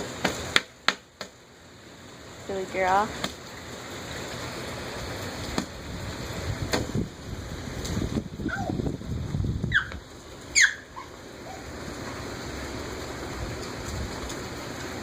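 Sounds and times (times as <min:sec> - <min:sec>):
light rain hissing: 0:00.0 - 0:15.0
high falling squeaks: 0:10.5 - 0:11.6.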